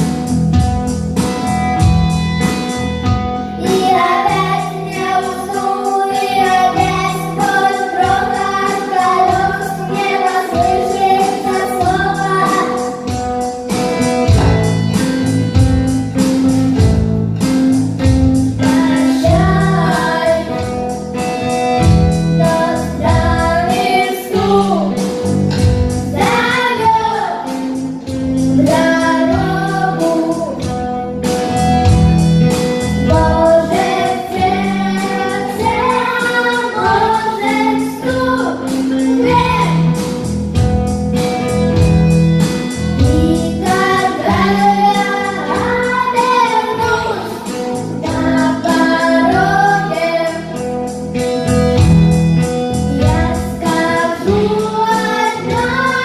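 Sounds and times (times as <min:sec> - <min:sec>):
voices singing a melody: 0:03.6 - 0:13.5, 0:18.5 - 0:31.0, 0:32.7 - 0:40.3, 0:42.9 - 0:50.9, 0:52.5 - 0:56.0
sharp knocks beating time: 0:14.2 - 0:15.8.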